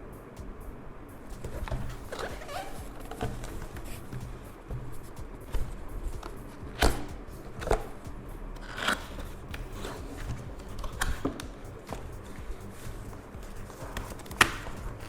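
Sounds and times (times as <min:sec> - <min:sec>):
hands handling keyboard and packaging: 0:08.6 - 0:15.0.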